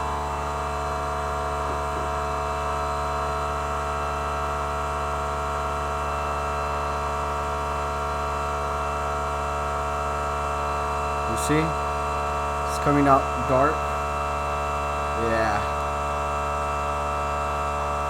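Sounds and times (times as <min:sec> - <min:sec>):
steady machine hum: 0:09.8 - 0:18.0.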